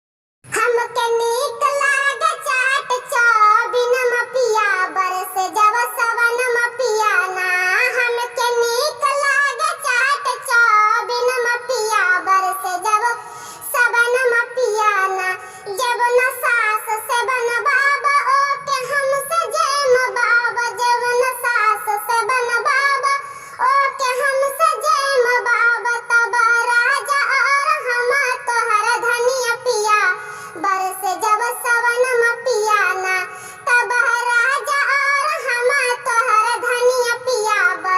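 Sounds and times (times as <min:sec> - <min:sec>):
high pitch-raised singing voice: 0:00.5 - 0:37.9.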